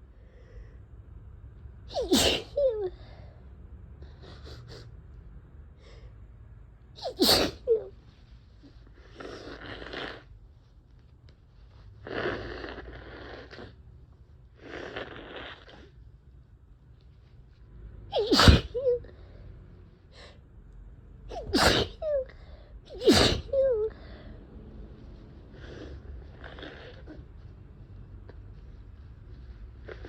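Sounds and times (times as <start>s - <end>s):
person sneezing: 1.9s - 2.6s, 7.0s - 7.8s, 18.1s - 19.0s, 21.3s - 22.3s, 22.9s - 23.8s.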